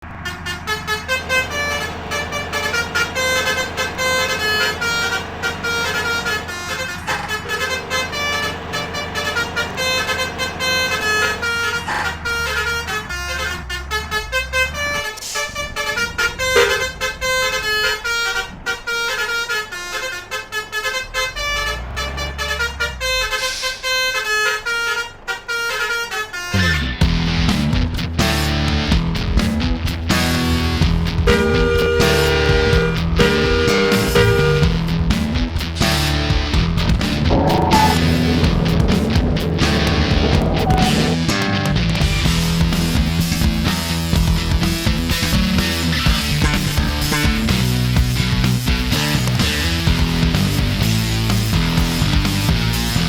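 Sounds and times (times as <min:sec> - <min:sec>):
engine rumble: 0:00.0 - 0:53.0
multi-tone air horns playing melody: 0:00.1 - 0:27.0, 0:30.1 - 0:42.9, 0:44.2 - 0:50.4.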